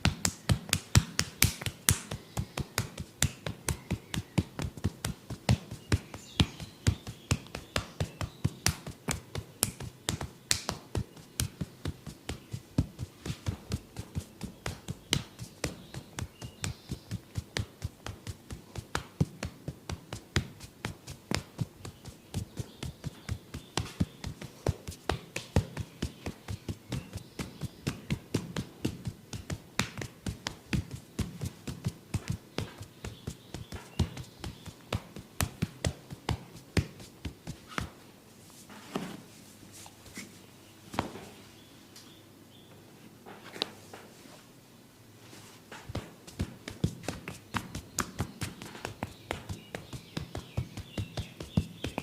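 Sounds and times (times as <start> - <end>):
hands tapping in a massage: 0.0 - 38.0, 45.8 - 52.0.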